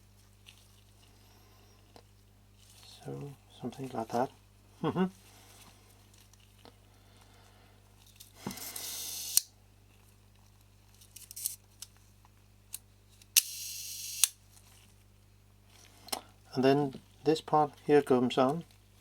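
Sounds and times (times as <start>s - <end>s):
hand air blower puffing: 8.4s - 9.5s
lens parts clicking: 12.7s - 14.4s.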